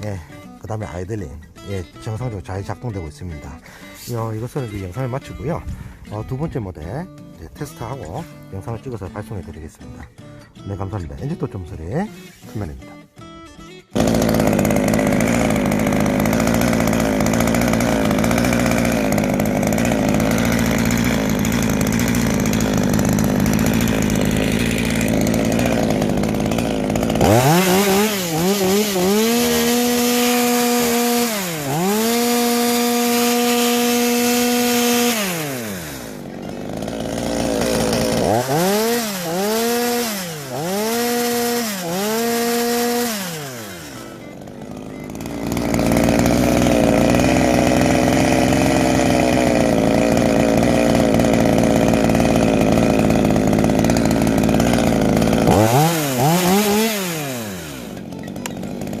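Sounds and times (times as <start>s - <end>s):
chainsaw engine revving: 13.9s - 59.0s.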